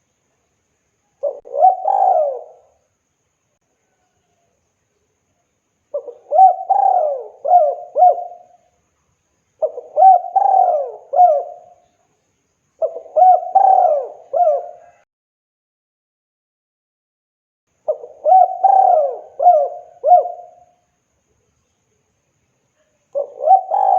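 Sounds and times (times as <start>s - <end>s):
dove cooing: 1.2s - 2.8s, 5.9s - 8.6s, 9.6s - 11.8s, 12.8s - 15.0s, 17.9s - 20.8s, 23.2s - 23.9s.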